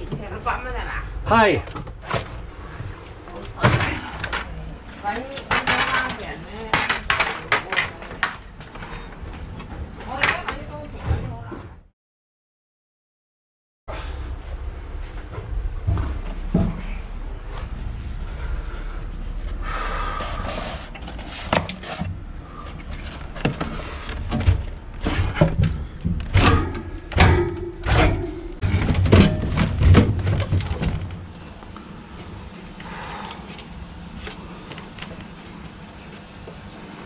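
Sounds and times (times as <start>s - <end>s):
low steady rumble: 13.9s - 32.9s
tools knocking and scraping: 22.9s - 31.1s.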